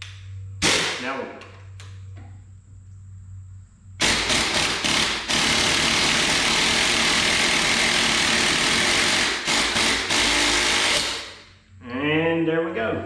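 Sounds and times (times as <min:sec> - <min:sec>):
impact wrench hammering: 0:04.0 - 0:11.4.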